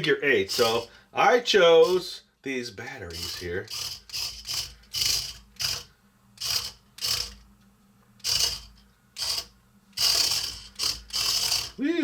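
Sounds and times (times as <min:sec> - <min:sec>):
small electric motors whirring: 0:00.5 - 0:00.9, 0:03.1 - 0:07.4, 0:08.2 - 0:11.8.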